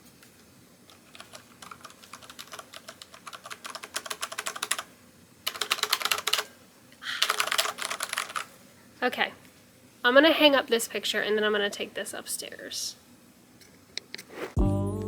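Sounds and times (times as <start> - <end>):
mechanical keyboard typing: 0.9 - 4.9, 5.5 - 6.5, 7.2 - 8.5.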